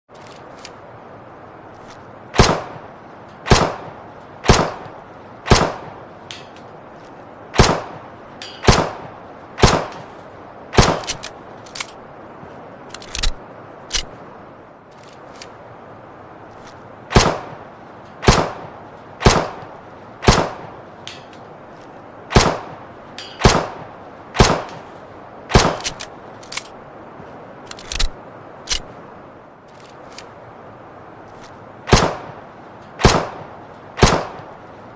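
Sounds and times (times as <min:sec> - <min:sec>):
steady hiss: 0:00.1 - 0:34.9
pistol shots: 0:02.4 - 0:02.8, 0:03.5 - 0:04.9, 0:05.5 - 0:05.9, 0:07.6 - 0:08.0, 0:08.6 - 0:10.1, 0:10.8 - 0:11.2, 0:17.1 - 0:17.6, 0:18.2 - 0:19.6, 0:20.2 - 0:20.7, 0:22.3 - 0:22.8, 0:23.4 - 0:24.8, 0:25.5 - 0:26.0, 0:31.9 - 0:32.4, 0:33.0 - 0:34.4.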